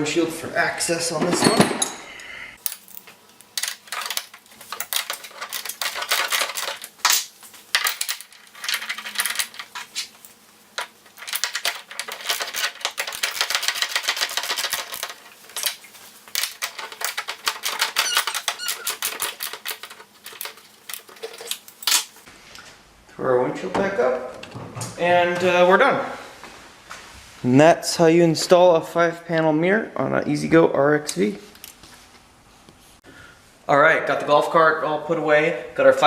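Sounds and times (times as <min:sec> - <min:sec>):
squeaks: 0:17.8 - 0:19.2.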